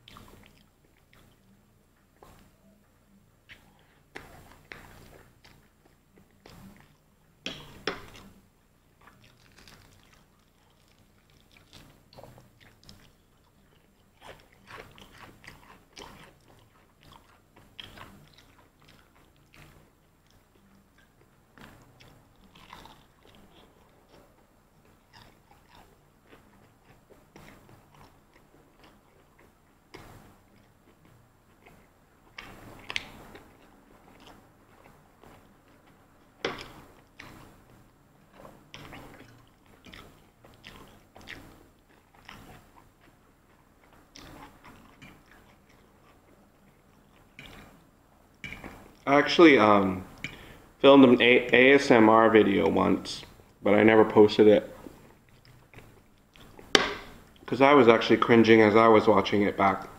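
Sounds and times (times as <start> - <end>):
person chewing crispy chicken: 7.6 - 47.8.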